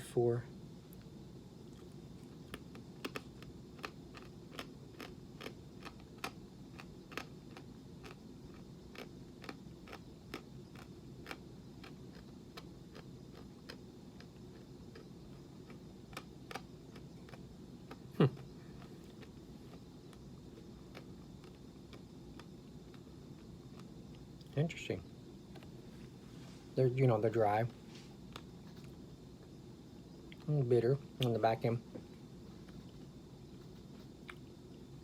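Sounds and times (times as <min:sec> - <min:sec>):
coffee bean crunched between teeth: 0:01.7 - 0:14.4.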